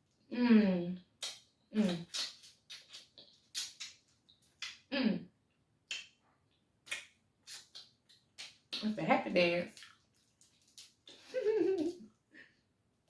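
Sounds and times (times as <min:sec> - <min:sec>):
person humming with pleasure: 0:00.3 - 0:01.0, 0:04.9 - 0:05.2
wet eating clicks and smacks: 0:01.2 - 0:04.9, 0:06.9 - 0:08.9, 0:09.7 - 0:11.1.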